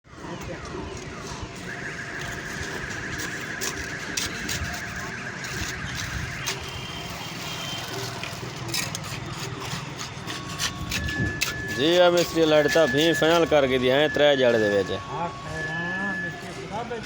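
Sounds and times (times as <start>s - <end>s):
construction machinery din: 0.1s - 17.0s
knocks and scrapes: 2.2s - 13.4s
high-pitched machinery squeal: 2.2s - 17.0s.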